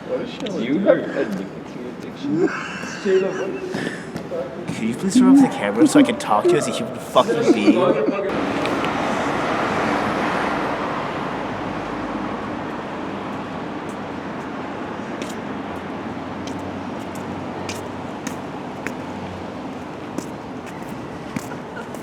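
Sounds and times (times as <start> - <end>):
road vehicle rushing: 8.3 - 22.0.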